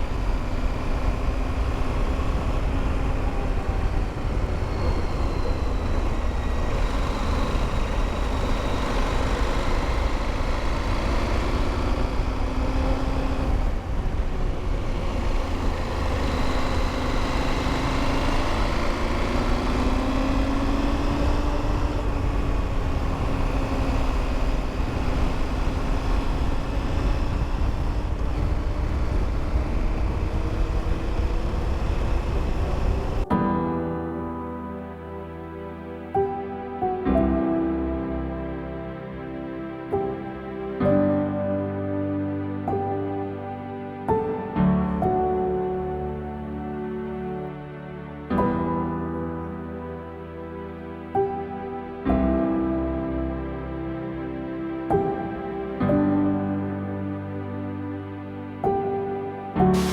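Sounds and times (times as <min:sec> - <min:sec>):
motorcycle engine running: 0:00.0 - 0:33.4
wind noise on microphone: 0:20.7 - 0:33.4.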